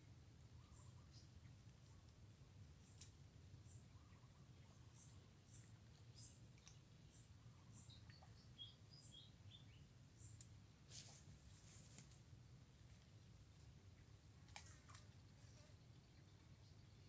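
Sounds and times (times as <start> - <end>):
low steady hum: 0.0 - 17.0
faint bird chirps: 0.5 - 2.0, 2.8 - 11.2.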